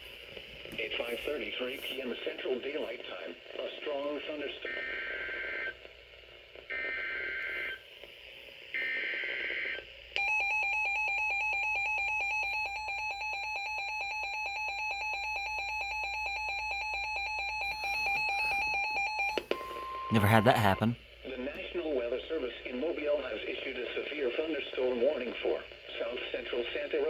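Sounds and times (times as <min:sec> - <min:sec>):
harsh alert attention tone: 0:20.1 - 0:21.0.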